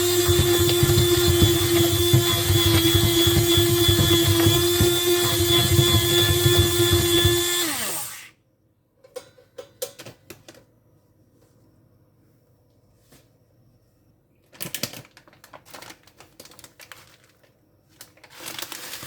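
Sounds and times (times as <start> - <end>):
kitchen appliance motor winding down: 0.0 - 8.3.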